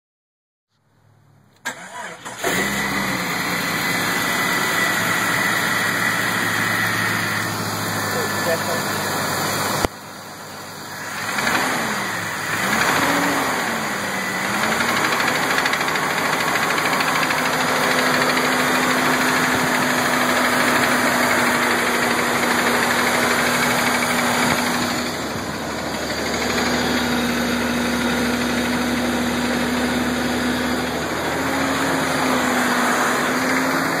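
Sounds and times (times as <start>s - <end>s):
car engine revving with knocking: 2.4s - 10.0s, 10.8s - 34.0s.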